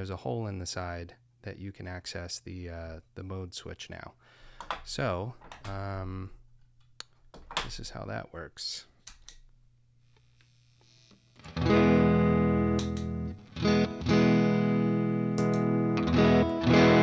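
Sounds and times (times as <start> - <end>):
electric guitar chords ringing: 11.4 - 17.0.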